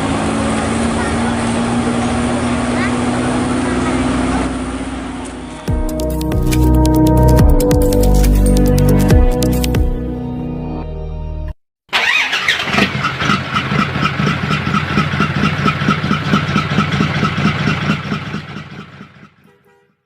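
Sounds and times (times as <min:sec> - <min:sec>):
truck engine pulsing: 0:00.0 - 0:10.3, 0:11.9 - 0:19.5
music: 0:05.6 - 0:11.6.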